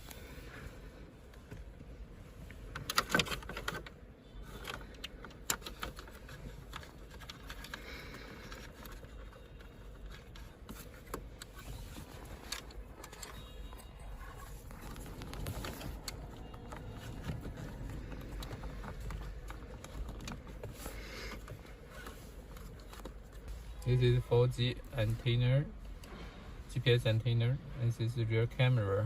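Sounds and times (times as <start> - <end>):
plastic plugs and cables clattering: 2.7 - 23.9.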